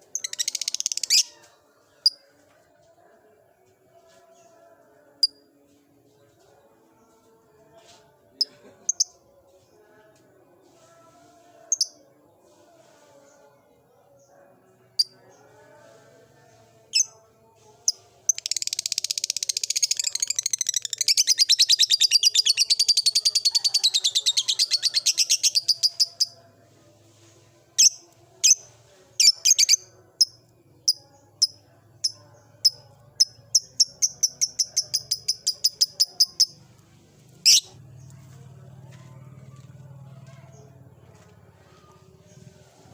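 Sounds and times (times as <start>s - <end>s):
lovebird chirps: 17.8s - 26.4s, 27.8s - 36.6s.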